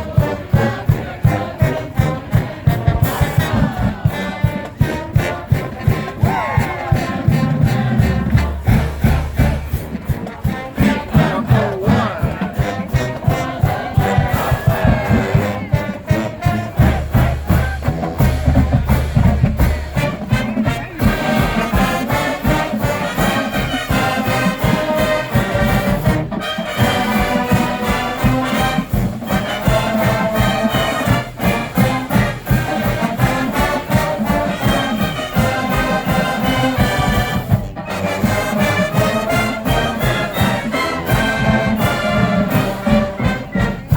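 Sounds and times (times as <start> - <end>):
brass horns: 0.0 - 43.9
crowd: 0.0 - 43.9
steady drum beat: 0.0 - 43.9.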